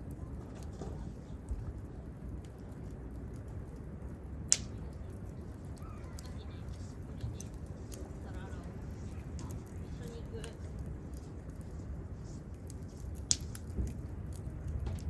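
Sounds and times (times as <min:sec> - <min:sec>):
campfire crackling: 0:00.0 - 0:15.0.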